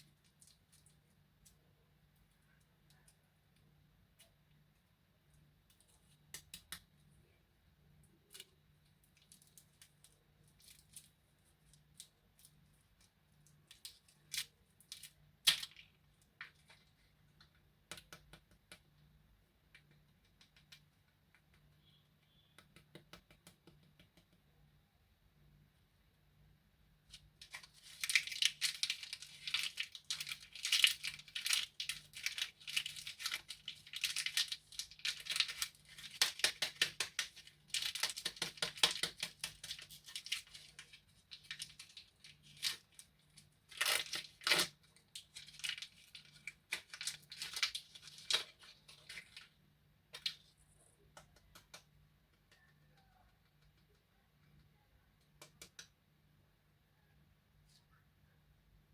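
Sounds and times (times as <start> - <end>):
plastic candy wrapper crinkling: 27.1 - 49.6.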